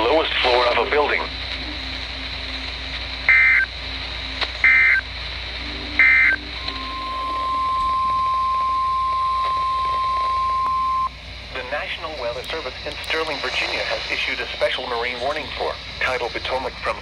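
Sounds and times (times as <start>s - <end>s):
warbling digital data bursts: 3.2s - 9.9s.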